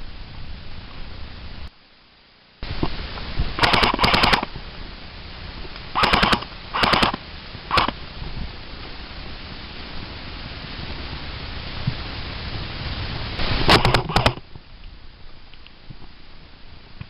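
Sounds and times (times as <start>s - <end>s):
airsoft gun firing bursts: 3.6s - 4.5s, 6.0s - 8.0s, 13.4s - 14.4s.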